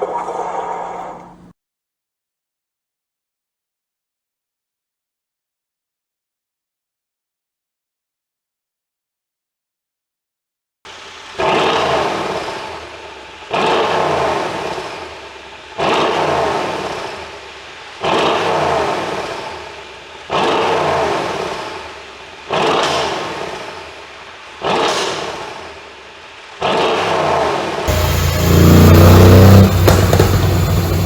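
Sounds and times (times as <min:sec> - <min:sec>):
car engine revving: 0:11.3 - 0:14.9, 0:26.6 - 0:31.0
exhaust pops and crackles: 0:27.8 - 0:31.0.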